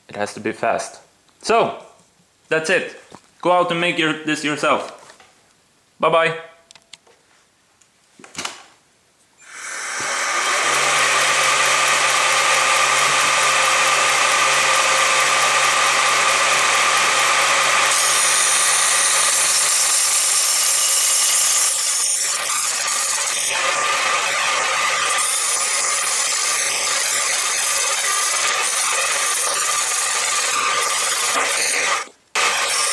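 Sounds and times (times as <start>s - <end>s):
motor spinning wheel humming: 9.5s - 32.9s.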